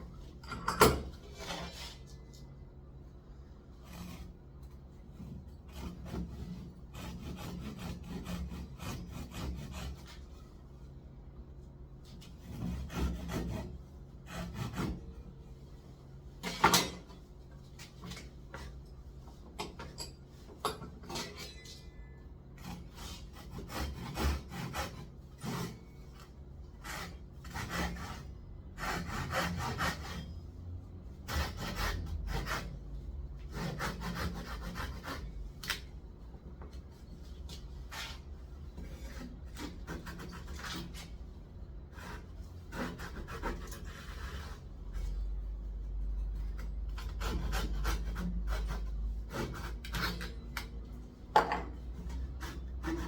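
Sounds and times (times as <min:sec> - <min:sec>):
tool scraping on wood: 0:01.2 - 0:02.1, 0:03.8 - 0:10.3, 0:12.1 - 0:15.2, 0:22.6 - 0:30.4, 0:33.4 - 0:35.8, 0:36.7 - 0:41.2, 0:41.8 - 0:53.0.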